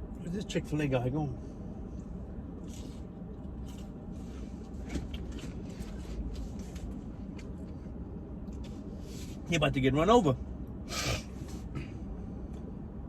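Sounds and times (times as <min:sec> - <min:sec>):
soft chewing: 0:02.0 - 0:09.4.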